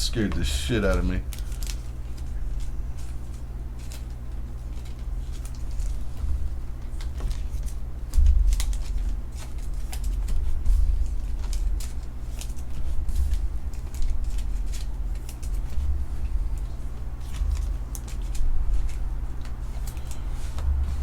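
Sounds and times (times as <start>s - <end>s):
pack wrappers rustling: 0.0s - 6.2s, 6.8s - 21.0s
steady low hum: 0.0s - 21.0s
trading cards sliding and flicking: 8.5s - 21.0s.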